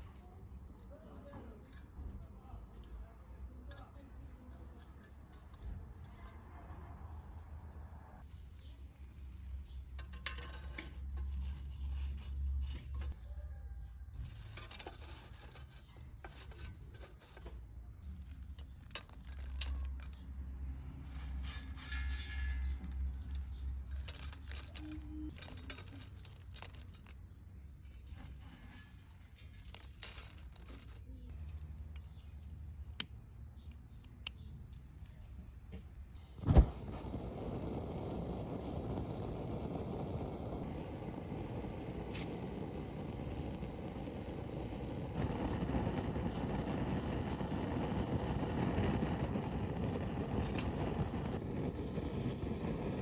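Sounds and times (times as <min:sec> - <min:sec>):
rasping scraping on metal: 0:14.2 - 0:20.2, 0:21.0 - 0:31.0.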